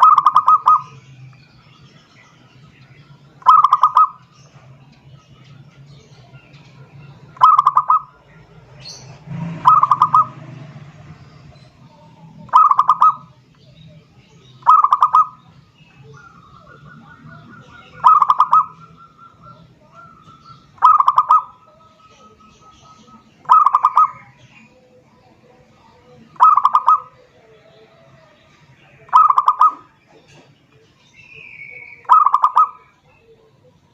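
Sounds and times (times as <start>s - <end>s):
dove cooing: 0.0s - 1.1s, 3.4s - 4.7s, 6.2s - 10.4s, 11.5s - 13.4s, 14.6s - 30.6s, 31.8s - 33.7s.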